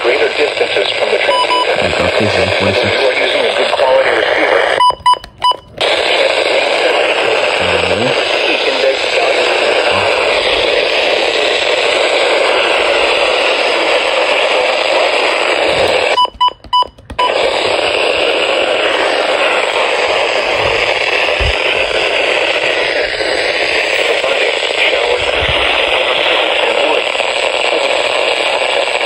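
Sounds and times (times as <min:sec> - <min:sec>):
radio static hiss: 0:00.0 - 0:05.0, 0:05.8 - 0:16.4, 0:17.1 - 0:29.0
short beeps: 0:04.8 - 0:05.8.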